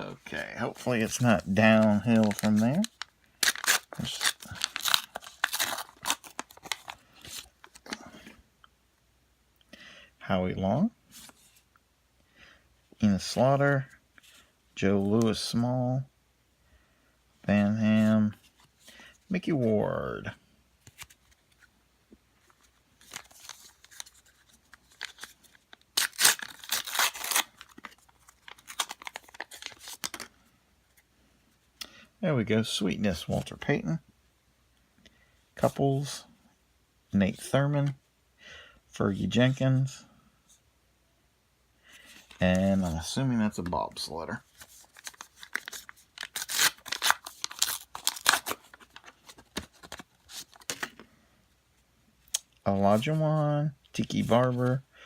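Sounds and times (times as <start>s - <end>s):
wrapper crinkling and rustling: 0.6s - 8.0s, 23.0s - 30.3s, 44.4s - 51.0s
wrapper tearing: 1.0s - 7.8s, 23.0s - 30.3s, 44.6s - 51.0s.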